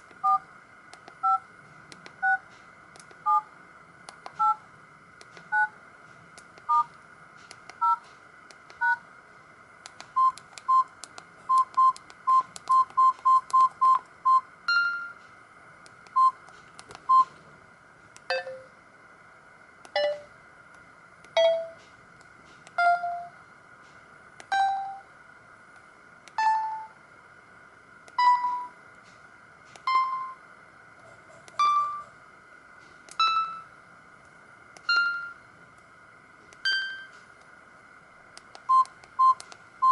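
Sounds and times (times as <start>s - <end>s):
phone keypad beeps: 6.7s - 6.9s, 7.8s - 8.0s, 8.8s - 9.0s, 10.2s - 10.9s, 11.5s - 15.1s, 16.2s - 16.4s, 17.1s - 17.3s, 38.7s - 39.9s.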